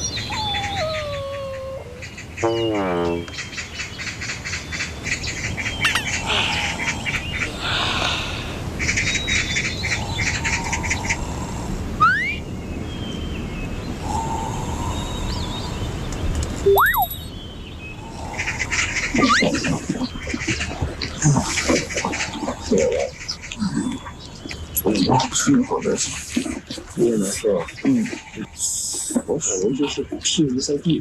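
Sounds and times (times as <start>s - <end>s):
birds chirping in high trills: 0.0s - 8.2s, 8.8s - 11.4s, 16.7s - 21.3s
quick rising whistle: 12.0s - 12.4s, 16.7s - 17.3s
falling tone: 16.7s - 17.3s.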